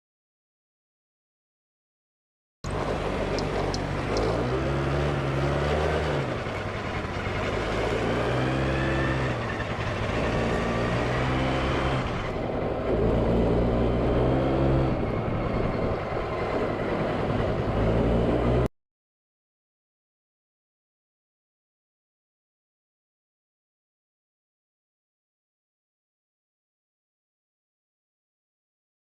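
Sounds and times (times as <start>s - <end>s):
scooter engine revving: 2.7s - 18.7s.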